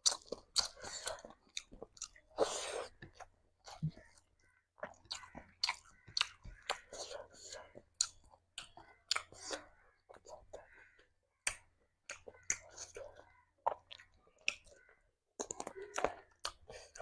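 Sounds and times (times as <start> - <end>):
person chewing and smacking: 0.0 - 17.0.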